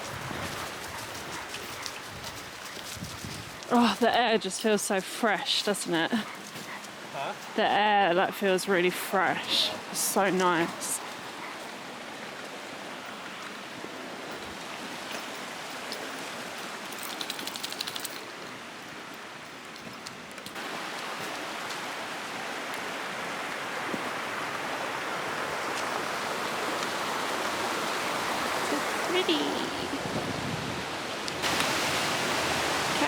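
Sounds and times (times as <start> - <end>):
water rushing over rocks: 20.6 - 33.0.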